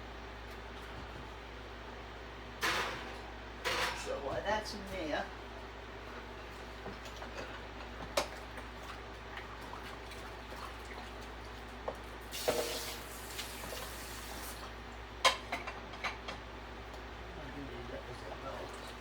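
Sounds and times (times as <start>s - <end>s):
clicks and knocks of kitchen things: 2.6s - 4.1s, 15.2s - 16.4s
kitchen tap running: 8.2s - 14.7s.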